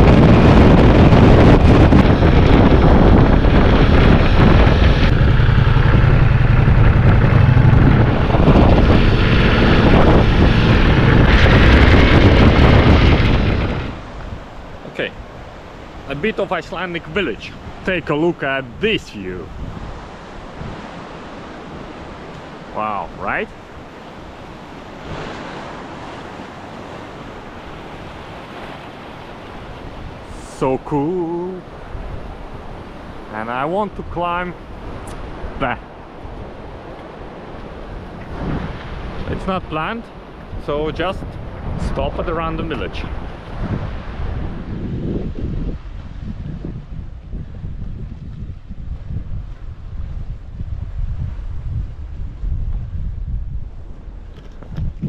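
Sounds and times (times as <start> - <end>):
wind buffeting microphone: 0.0 - 55.0
motorcycle engine running: 0.8 - 14.0.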